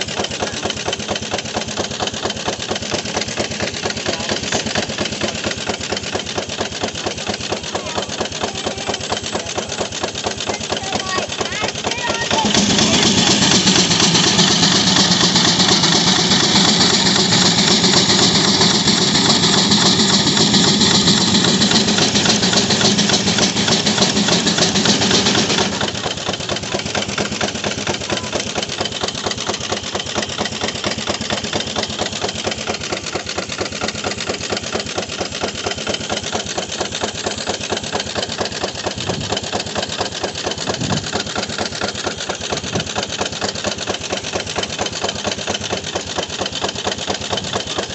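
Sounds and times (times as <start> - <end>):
sawmill blade cutting log: 0.0 - 47.9
steam engine running: 0.0 - 47.9.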